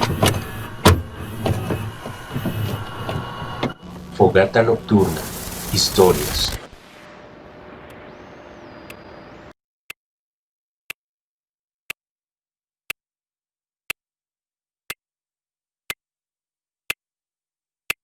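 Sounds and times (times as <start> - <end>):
rushing background noise: 0.0 - 9.5.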